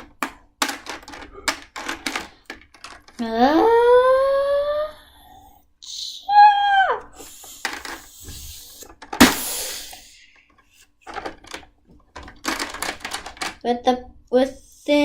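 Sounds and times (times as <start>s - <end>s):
toys knocking and rubbing: 0.0s - 3.4s, 7.0s - 13.6s
child making whoo sound: 3.4s - 5.2s, 5.8s - 7.3s
hissing rush: 7.2s - 10.4s.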